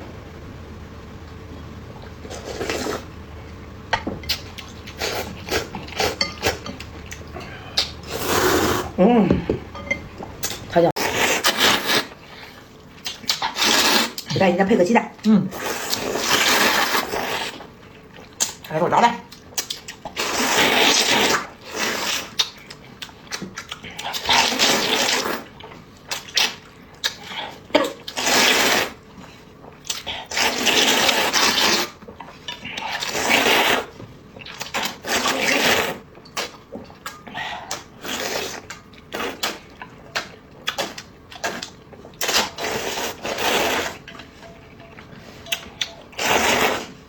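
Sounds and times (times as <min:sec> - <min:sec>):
noodle slurping: 0:02.0 - 0:03.1, 0:04.3 - 0:09.0, 0:10.4 - 0:14.3, 0:15.5 - 0:17.7, 0:28.0 - 0:29.0, 0:29.9 - 0:32.0, 0:32.6 - 0:36.6, 0:37.7 - 0:44.6, 0:45.2 - 0:47.0.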